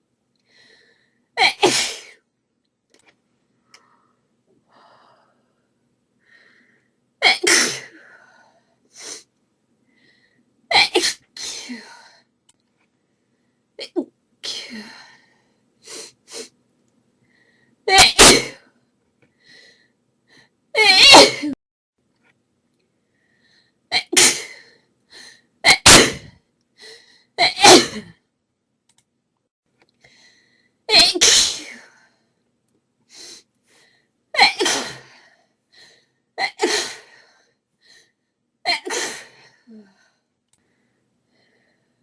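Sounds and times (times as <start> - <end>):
woman sneezing: 17.9 - 18.6, 20.8 - 21.6, 25.7 - 26.4, 27.4 - 28.1.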